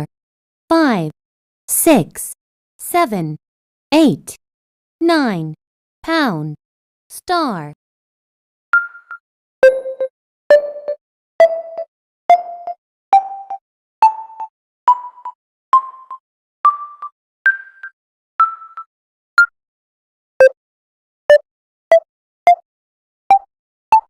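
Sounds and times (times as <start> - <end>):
phone keypad beeps: 8.8 - 19.5.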